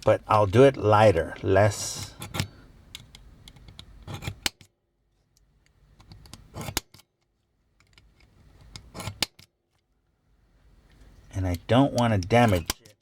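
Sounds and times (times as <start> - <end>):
metal punch clicking on pin: 11.5 - 13.0.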